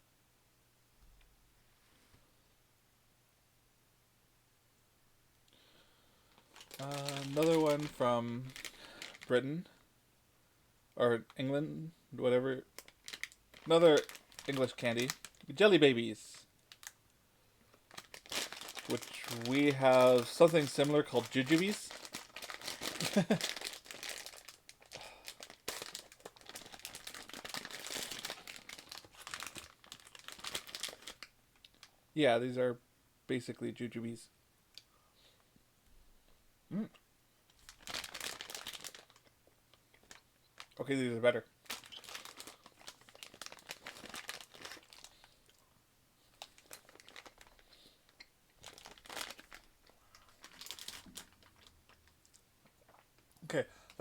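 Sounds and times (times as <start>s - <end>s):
plastic packaging crinkling: 6.3s - 9.3s, 12.8s - 17.0s, 17.7s - 31.9s, 37.5s - 39.3s, 39.9s - 40.8s, 41.6s - 45.6s, 46.3s - 53.0s.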